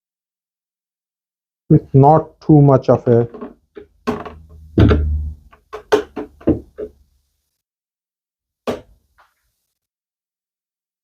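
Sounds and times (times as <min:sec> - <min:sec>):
clamp knocks on wooden frame: 0:04.1 - 0:07.0.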